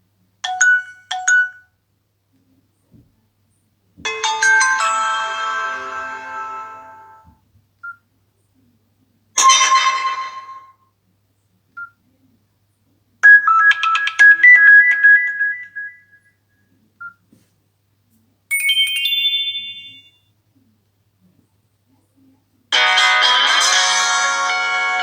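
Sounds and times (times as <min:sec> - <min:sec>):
phone electronic melody: 0:00.4 - 0:01.6, 0:04.1 - 0:07.3, 0:13.2 - 0:16.0, 0:22.8 - 0:25.0
jingle of rising notes: 0:04.1 - 0:07.2.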